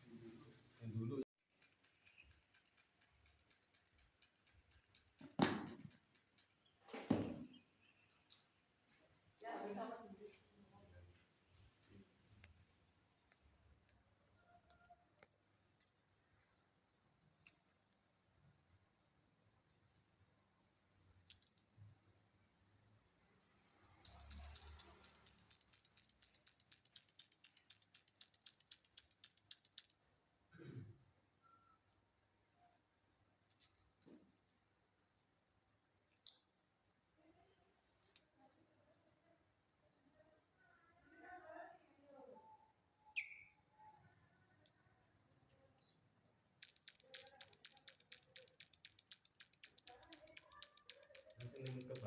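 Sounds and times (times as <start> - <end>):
faint rapid light clicks: 23.6 - 30.1, 46.6 - 52.0.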